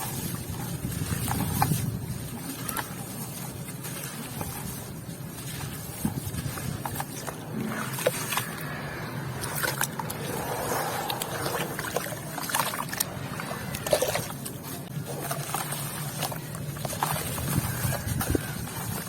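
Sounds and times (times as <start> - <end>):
wet watery sounds: 0.0 - 19.0.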